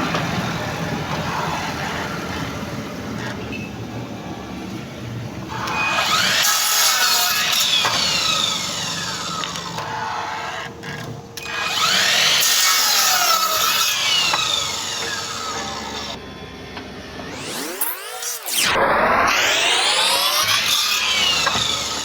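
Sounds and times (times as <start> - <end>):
mitre saw cutting: 5.5 - 16.2, 17.2 - 22.0.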